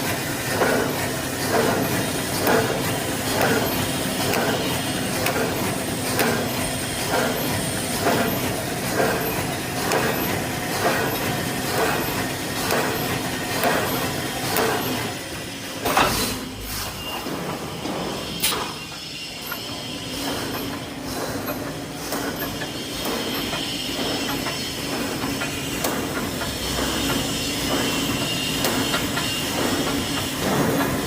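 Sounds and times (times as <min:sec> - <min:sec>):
welding machine clanking: 0:00.0 - 0:31.0.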